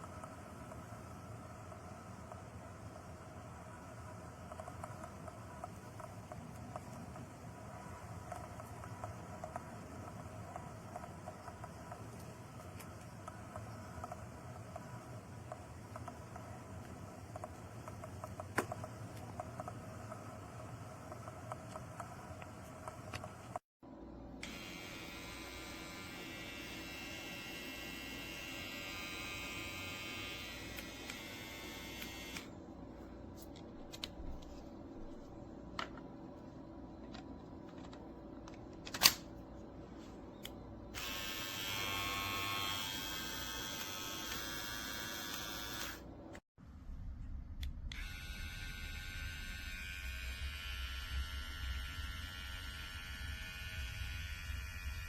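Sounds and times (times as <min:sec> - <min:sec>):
beard trimmer buzzing: 0:24.4 - 0:32.5, 0:41.0 - 0:46.0, 0:48.0 - 0:55.0.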